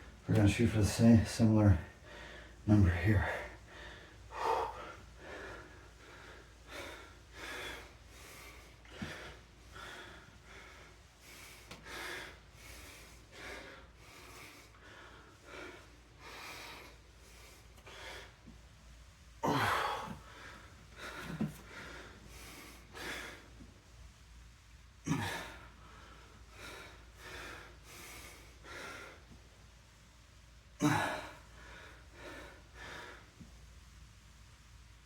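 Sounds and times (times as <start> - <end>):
man breathing hard: 1.9 - 18.6, 19.4 - 24.0, 25.1 - 29.4, 30.8 - 33.4.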